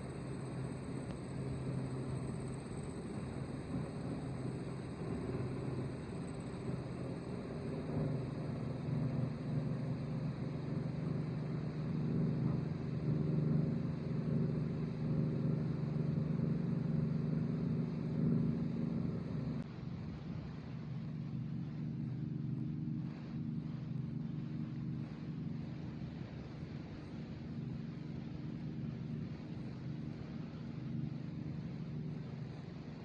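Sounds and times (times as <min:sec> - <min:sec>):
combine harvester engine: 0:00.0 - 0:19.6.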